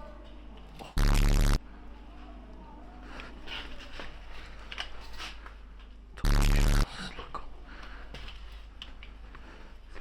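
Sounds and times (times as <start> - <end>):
airsoft rifle full-auto burst: 1.0 - 1.6, 6.3 - 6.9.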